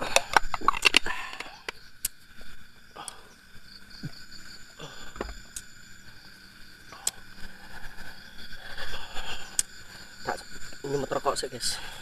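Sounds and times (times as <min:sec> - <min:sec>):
night insects chirring: 0:00.0 - 0:12.0
clicks of small objects handled: 0:00.2 - 0:02.2.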